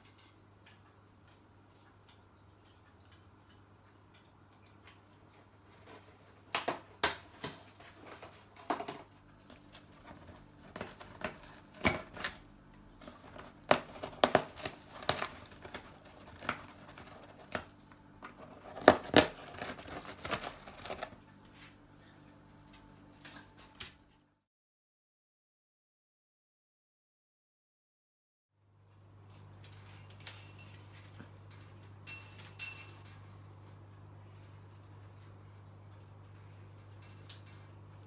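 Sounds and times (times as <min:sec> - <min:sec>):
parrot tearing packaging: 0:09.6 - 0:21.2.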